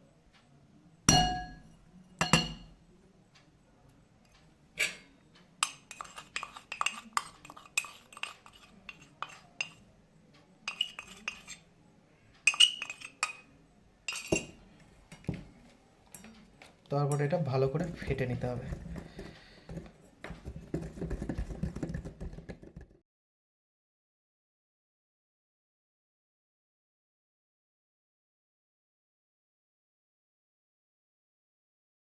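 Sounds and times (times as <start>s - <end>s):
clinks against mixing bowl: 1.1s - 2.8s, 10.7s - 11.6s, 14.1s - 14.6s.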